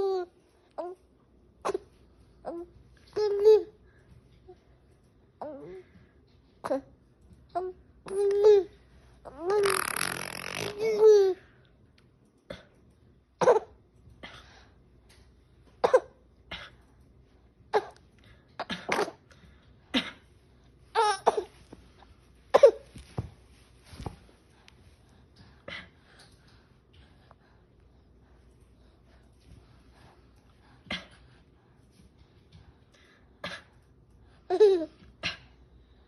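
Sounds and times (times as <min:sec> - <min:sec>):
baby coughing: 0:13.4 - 0:13.8, 0:15.8 - 0:16.8, 0:17.7 - 0:18.0, 0:18.6 - 0:19.2, 0:21.0 - 0:21.6, 0:22.5 - 0:22.9.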